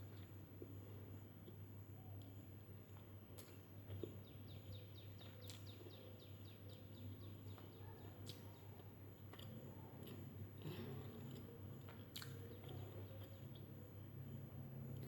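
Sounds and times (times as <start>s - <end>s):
steady low hum: 0.0s - 15.0s
bird chirping: 4.2s - 8.8s.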